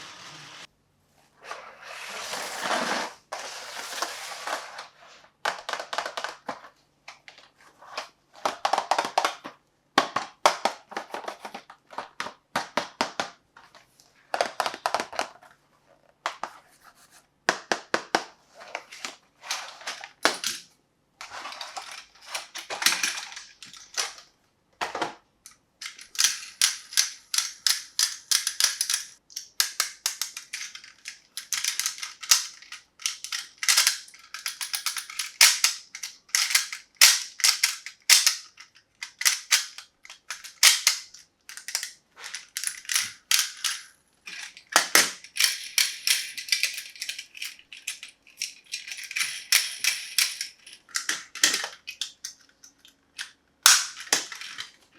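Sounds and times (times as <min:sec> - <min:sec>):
toy pieces clicking and clattering: 0:05.4 - 0:06.6, 0:18.8 - 0:24.3, 0:24.9 - 0:54.8.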